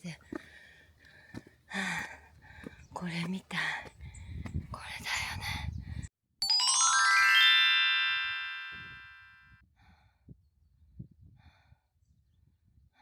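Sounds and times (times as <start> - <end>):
descending bell chime: 6.4 - 9.5.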